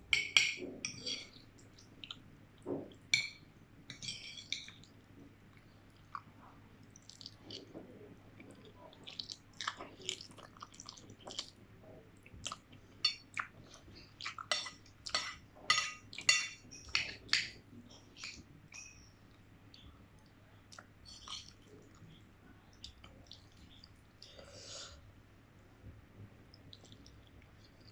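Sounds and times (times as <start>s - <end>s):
cutlery clinking against bowl: 0.1s - 1.4s, 14.5s - 17.6s.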